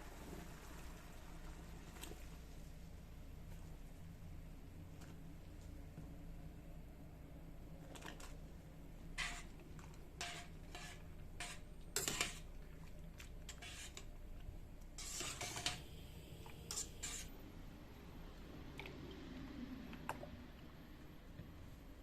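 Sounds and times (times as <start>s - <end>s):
low steady hum: 0.0s - 22.0s.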